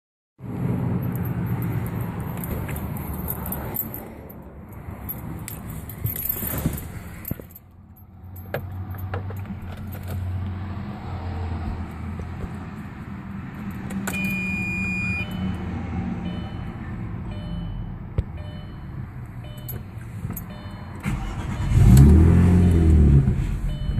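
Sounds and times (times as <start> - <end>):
keys jangling: 1.0 - 7.6
steady beep: 14.2 - 15.6, 17.3 - 19.8, 20.4 - 21.0, 23.7 - 23.9
car engine idling with misfire: 21.0 - 22.0.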